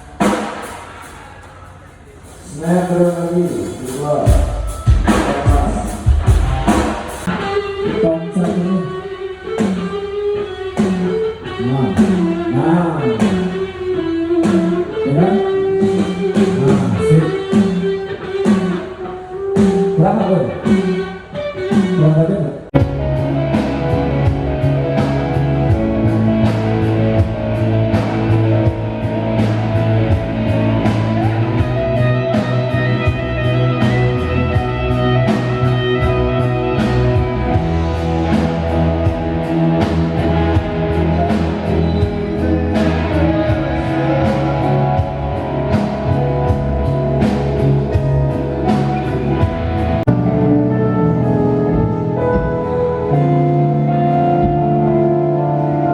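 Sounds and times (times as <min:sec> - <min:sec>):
rock music over pa system: 0:00.0 - 0:55.9.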